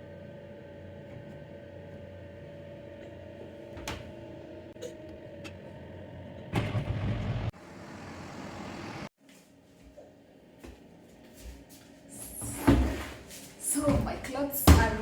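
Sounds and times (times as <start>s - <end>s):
washing machine motor hum: 0.0s - 9.1s.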